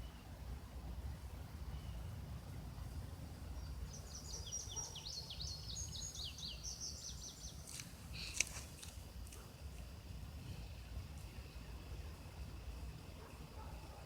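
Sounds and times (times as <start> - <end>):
songbird singing: 0.0 - 9.4.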